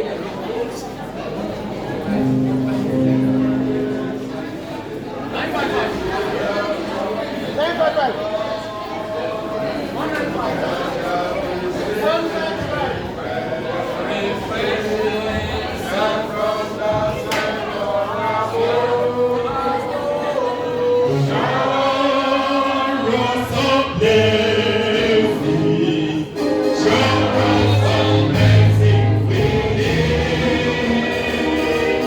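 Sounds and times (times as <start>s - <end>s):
low bass accompaniment: 2.1s - 5.2s
gospel choir singing: 2.1s - 7.0s, 8.0s - 32.0s.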